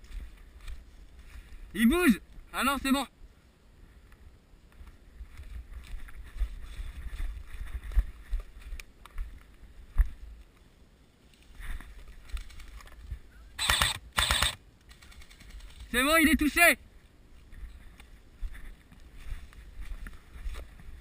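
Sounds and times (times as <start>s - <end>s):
airsoft rifle burst: 13.6s - 16.0s
sharp clicks: 13.6s - 16.1s.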